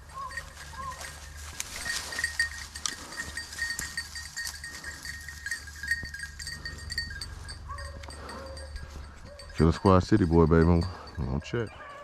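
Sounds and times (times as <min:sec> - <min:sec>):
hounds baying: 0:00.0 - 0:12.0.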